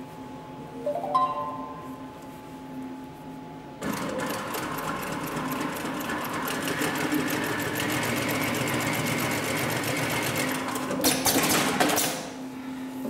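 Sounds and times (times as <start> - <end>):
industrial sewing machine stitching: 3.8 - 12.3.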